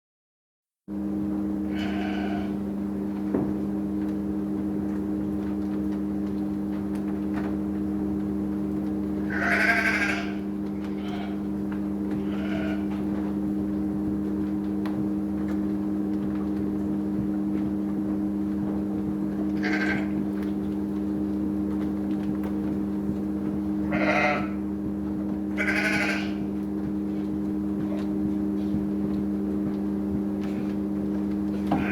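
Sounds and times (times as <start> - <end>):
low mechanical hum: 0.9 - 31.9
sheep bleating: 1.7 - 2.6, 9.2 - 11.5, 12.1 - 13.0, 19.6 - 20.2, 23.8 - 24.6, 25.5 - 26.5.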